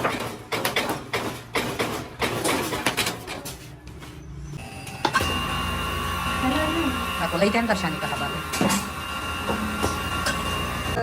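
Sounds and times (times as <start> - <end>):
clattering knocks and clicks: 0.0 - 3.6.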